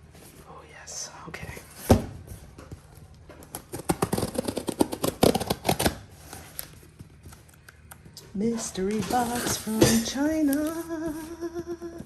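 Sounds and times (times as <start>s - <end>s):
cardboard packaging rustling: 2.4s - 7.9s, 8.9s - 11.4s.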